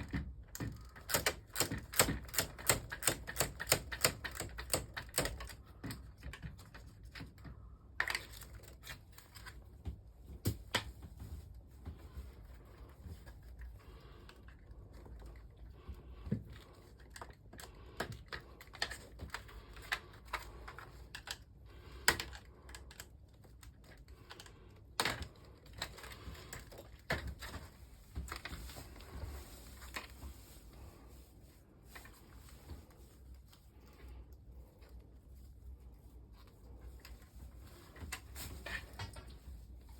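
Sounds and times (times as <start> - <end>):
hard objects clicking and knocking: 0.0 - 8.9.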